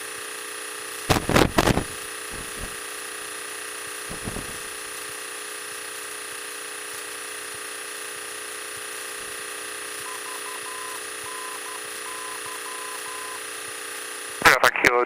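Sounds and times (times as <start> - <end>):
airplane engine and propeller droning: 1.1 - 2.9, 4.1 - 5.2
high steady whine: 1.1 - 2.9, 4.1 - 5.1
short and long high beeps: 10.1 - 13.4.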